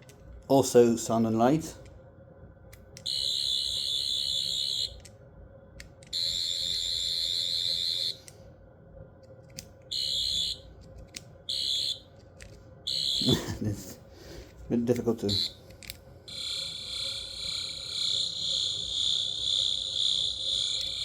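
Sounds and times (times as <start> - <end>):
toy electronic buzzing whine: 3.0 - 5.1, 6.0 - 8.4, 9.8 - 13.6, 15.2 - 15.6, 16.3 - 21.0.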